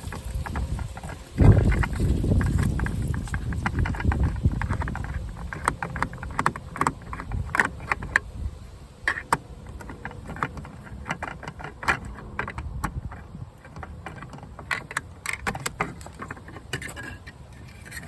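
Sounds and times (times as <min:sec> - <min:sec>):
screwdriver clicking on plastic trim: 0:02.6 - 0:08.3.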